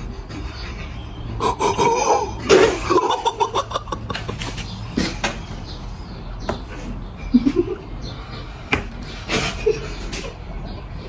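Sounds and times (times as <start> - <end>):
person coughing and spluttering: 1.4 - 3.6.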